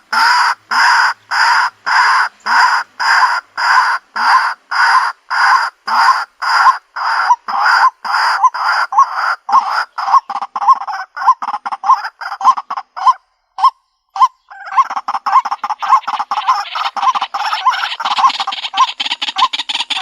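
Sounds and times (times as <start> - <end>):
waterhen calling: 0.0 - 20.0.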